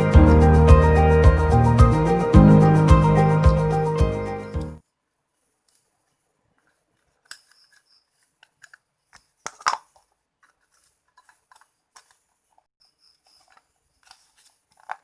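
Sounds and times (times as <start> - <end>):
clicks and snips of hand work: 6.5 - 12.7.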